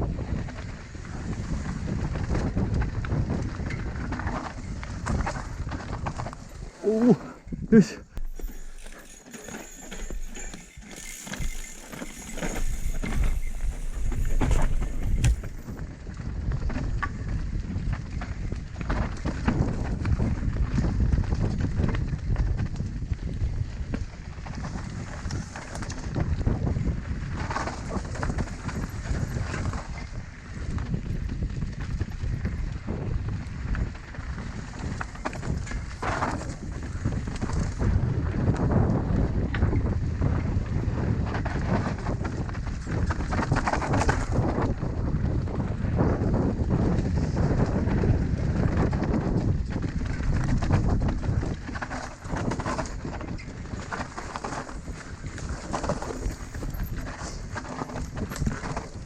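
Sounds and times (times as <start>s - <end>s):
bike tyres rolling over rough ground: 0.0s - 7.6s, 8.2s - 59.0s
wind rumbling on microphone: 0.0s - 59.0s
bike knocking and rattling: 0.2s - 59.0s
bike rattling knocks: 8.2s - 15.8s.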